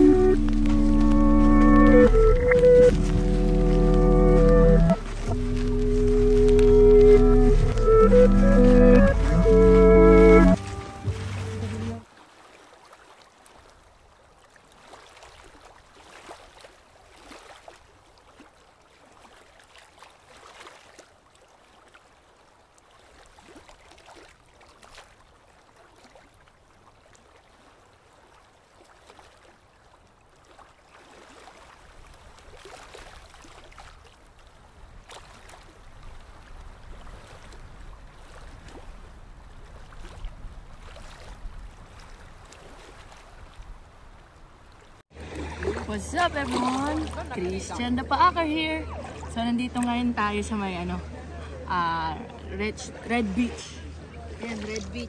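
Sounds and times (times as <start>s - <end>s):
low rumble: 0.0s - 12.0s
sea water lapping and splashing: 0.0s - 55.0s.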